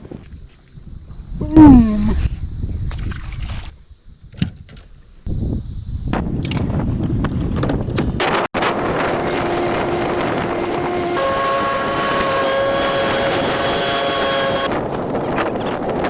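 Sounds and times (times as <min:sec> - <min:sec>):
wind buffeting microphone: 0:05.3 - 0:16.0
steady whine: 0:08.6 - 0:14.7.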